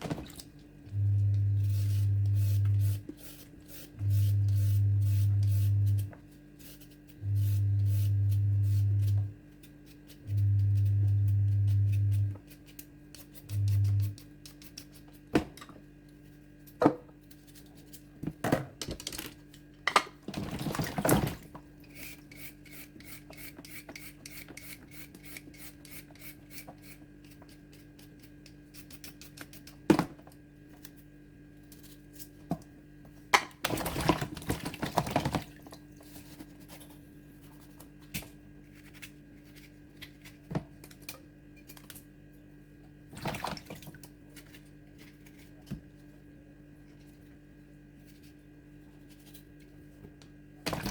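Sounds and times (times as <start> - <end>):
steady low hum: 0.0 - 50.9.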